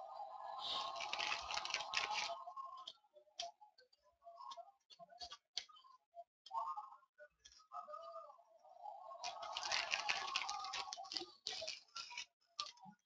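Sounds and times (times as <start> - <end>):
packaging crinkling: 0.7 - 2.4, 9.2 - 12.7
cards clicking and tapping: 0.8 - 2.4, 9.2 - 12.8.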